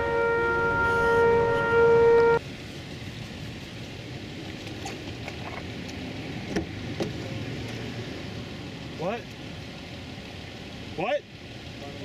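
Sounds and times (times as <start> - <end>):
warning siren steady tone: 0.0 - 2.4
rain hiss: 0.1 - 12.0.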